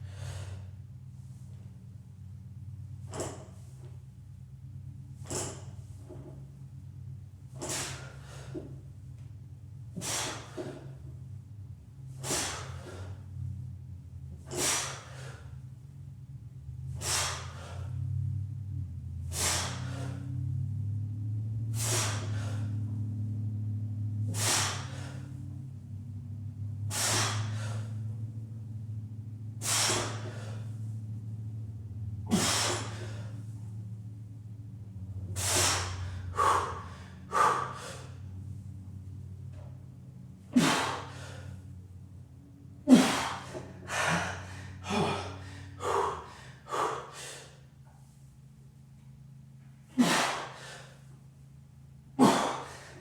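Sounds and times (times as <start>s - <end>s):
heavy forceful breathing: 0.0s - 1.4s, 7.5s - 8.8s, 9.9s - 11.0s, 12.1s - 13.3s, 14.4s - 15.6s, 16.9s - 18.0s, 19.2s - 20.4s, 21.7s - 22.9s, 24.2s - 25.5s, 26.9s - 28.2s, 29.6s - 31.0s, 32.2s - 33.8s, 35.2s - 38.4s, 40.4s - 41.7s, 42.8s - 48.2s, 49.9s - 51.2s, 52.2s - 53.0s
heavy gasping breaths: 35.4s - 38.2s, 42.9s - 47.6s, 50.0s - 51.0s, 52.2s - 53.0s.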